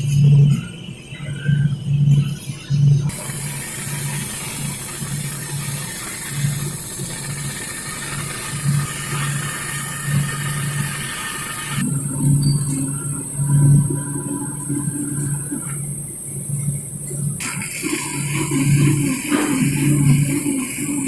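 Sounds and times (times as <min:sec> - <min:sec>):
welding arc crackling hiss: 0:03.0 - 0:11.8, 0:17.3 - 0:21.0.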